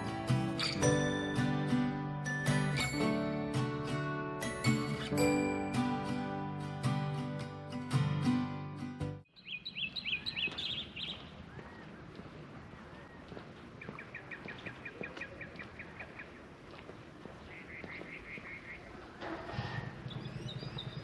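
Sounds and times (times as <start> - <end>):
birdsong: 9.3 - 16.7, 17.4 - 21.0.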